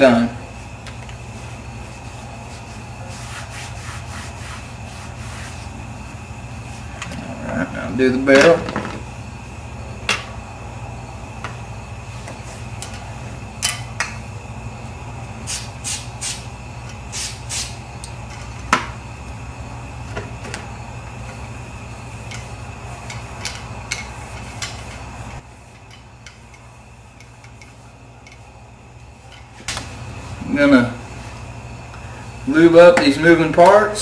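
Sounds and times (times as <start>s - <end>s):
steady low hum: 0.0s - 34.0s.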